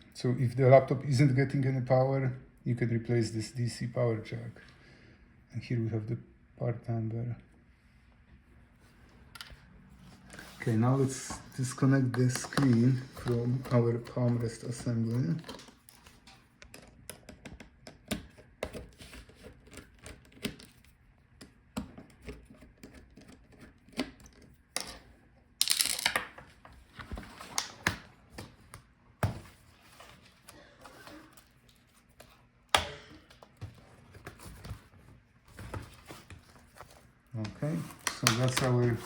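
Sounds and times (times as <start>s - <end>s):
plastic parts clicking and knocking: 15.4s - 18.8s, 25.6s - 26.4s.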